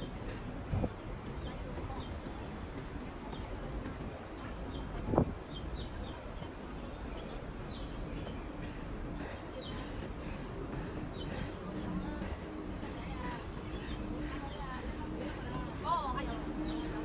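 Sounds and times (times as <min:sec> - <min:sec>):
insect drone: 0:00.0 - 0:17.0.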